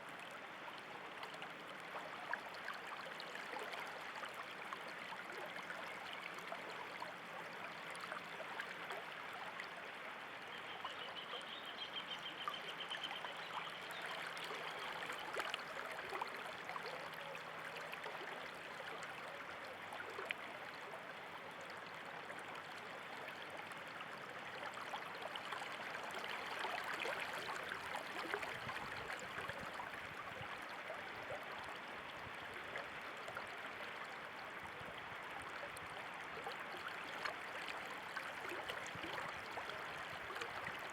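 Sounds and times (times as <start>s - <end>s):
stream water flowing: 0.0s - 40.9s.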